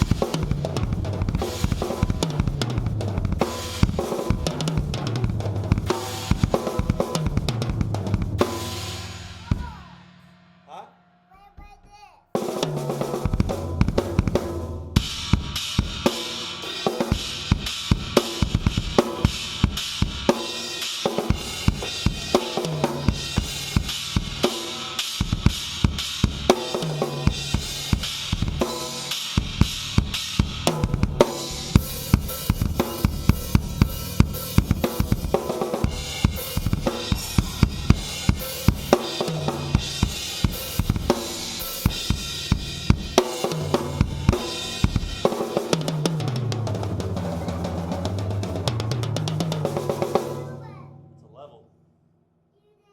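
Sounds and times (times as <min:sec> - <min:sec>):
bass drum: 0:00.0 - 0:10.0, 0:12.8 - 0:16.2, 0:21.3 - 0:24.6, 0:25.2 - 0:28.8, 0:29.4 - 0:50.3
snare drum: 0:00.0 - 0:10.3, 0:12.4 - 0:50.5
cymbals: 0:00.0 - 0:11.2, 0:12.4 - 0:50.4.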